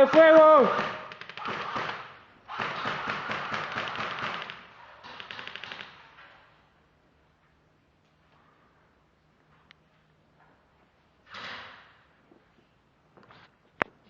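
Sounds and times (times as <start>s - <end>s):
airsoft guns firing bursts: 0.0s - 6.0s.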